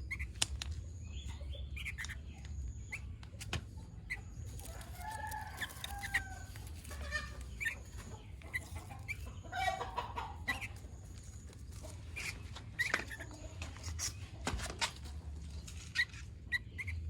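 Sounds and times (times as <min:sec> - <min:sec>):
birds calling: 0:00.0 - 0:17.0.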